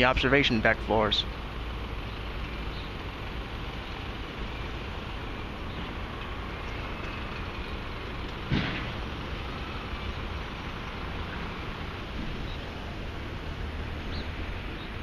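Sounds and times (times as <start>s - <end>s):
passing traffic: 0.0s - 15.0s
sharp bang: 8.4s - 9.1s.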